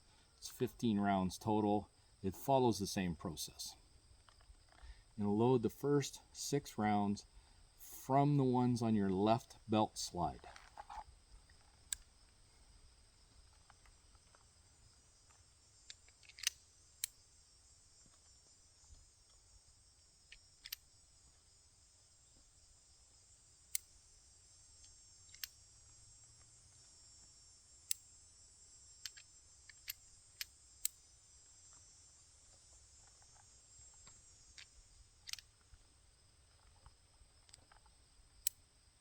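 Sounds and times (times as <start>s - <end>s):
revolver cylinder clicks: 15.9s - 17.2s, 24.8s - 25.6s, 34.6s - 35.5s.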